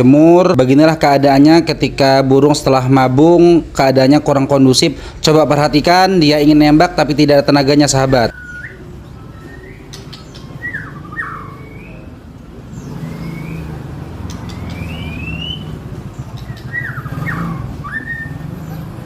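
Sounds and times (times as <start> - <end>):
bird call notes and chirps: 8.1 - 18.9
low vehicle rumble: 8.4 - 19.0.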